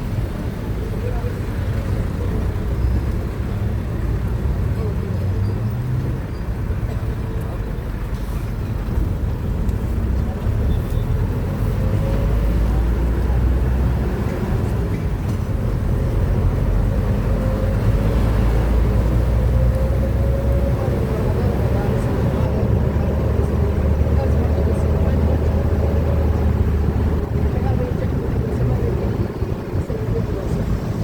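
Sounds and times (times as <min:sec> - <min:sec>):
city street traffic rumble: 0:00.0 - 0:31.0.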